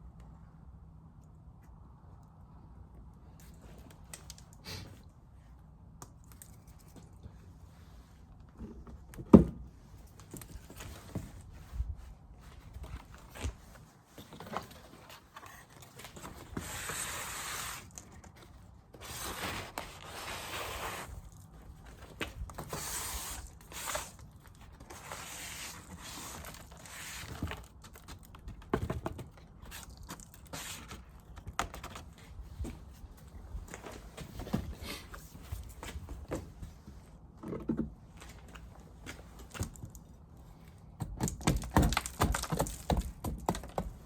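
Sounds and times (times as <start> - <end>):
scraping and rustling: 9.8 - 37.2.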